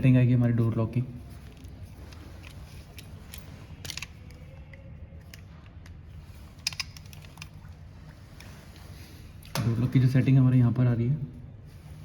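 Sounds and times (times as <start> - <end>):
low steady hum: 0.0 - 12.0
clicks and rattles of handling: 1.4 - 7.7.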